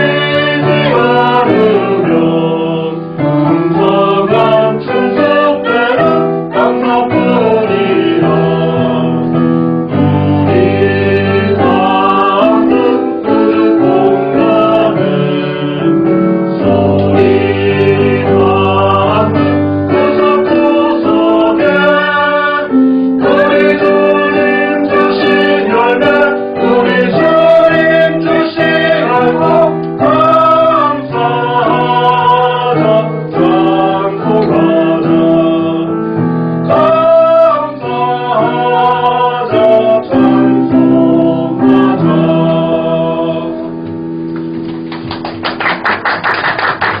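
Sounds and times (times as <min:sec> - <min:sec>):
church choir singing a hymn: 0:00.0 - 0:43.8
instrumental accompaniment: 0:00.0 - 0:47.0
people clapping: 0:44.3 - 0:47.0.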